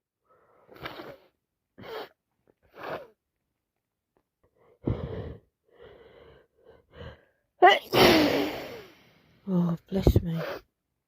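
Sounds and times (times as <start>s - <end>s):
woman sneezing: 7.6s - 8.9s.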